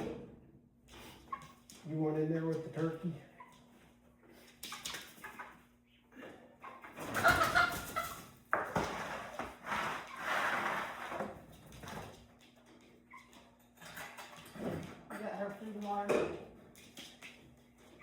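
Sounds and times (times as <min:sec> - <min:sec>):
chickens calling: 0:06.6 - 0:08.4.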